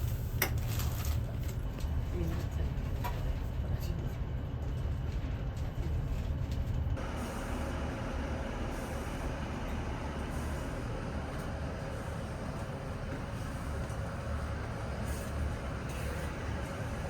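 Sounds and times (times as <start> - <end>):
train running rumble: 0.0 - 17.0.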